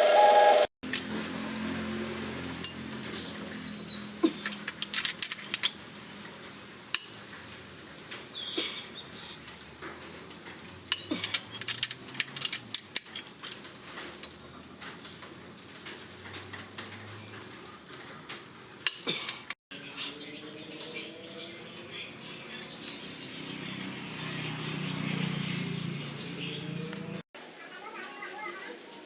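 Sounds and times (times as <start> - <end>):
metal tools clinking: 0.8 - 1.4, 2.5 - 5.8, 6.9 - 19.6.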